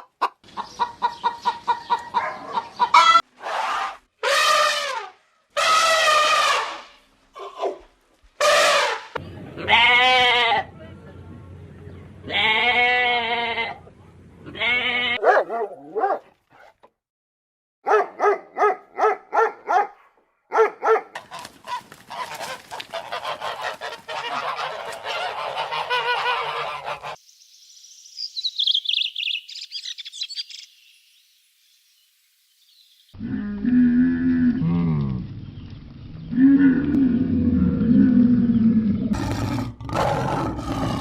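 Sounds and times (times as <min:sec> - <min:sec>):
loud honk-like calls: 0:02.9 - 0:07.0, 0:08.4 - 0:10.6, 0:22.1 - 0:27.2.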